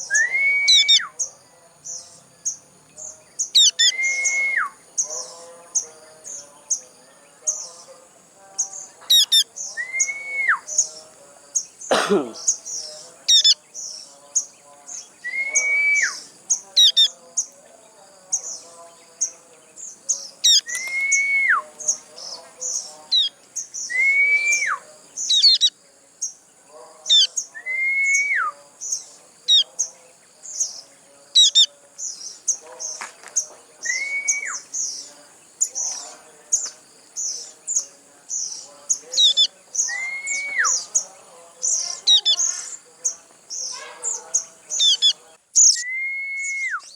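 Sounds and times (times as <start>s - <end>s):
young bird begging chirps: 0.0s - 1.2s, 3.4s - 4.6s, 9.1s - 10.9s, 13.3s - 13.6s, 23.1s - 25.7s, 39.2s - 41.0s, 41.7s - 42.8s, 43.6s - 46.9s.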